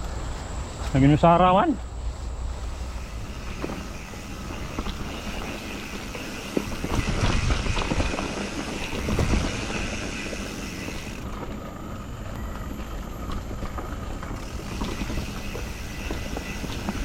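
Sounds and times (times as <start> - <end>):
tyre and wind noise: 1.8 - 17.0
bike rattling over bumps: 2.8 - 17.0.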